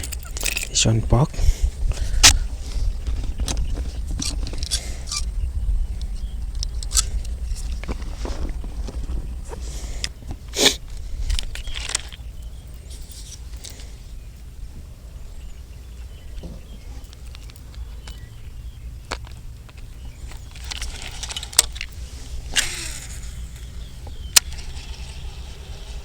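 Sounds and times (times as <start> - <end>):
wind buffeting microphone: 0.0 - 13.0
handling clicks and rustles: 0.0 - 26.0.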